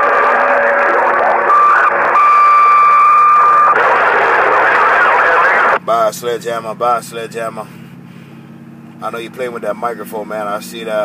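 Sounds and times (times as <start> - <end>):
steady carrier whistle: 0.0 - 3.8
radio static hiss: 0.0 - 5.8.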